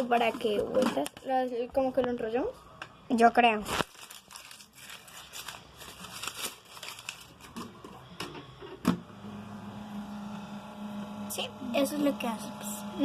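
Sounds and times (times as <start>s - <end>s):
paper crinkling and rustling: 3.6s - 8.1s.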